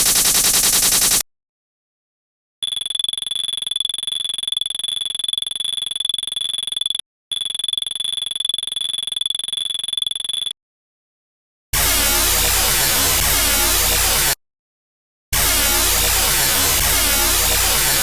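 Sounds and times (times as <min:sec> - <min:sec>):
pulsing electronic weapon buzz: 0:00.0 - 0:01.2, 0:11.8 - 0:14.4, 0:15.4 - 0:18.0.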